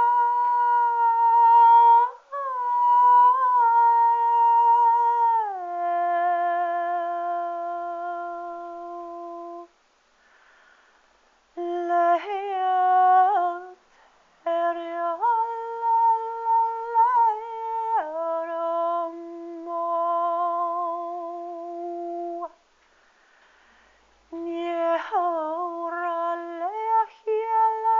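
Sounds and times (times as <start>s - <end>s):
high voice humming a melody: 0.0s - 9.7s, 11.6s - 13.8s, 14.5s - 22.6s.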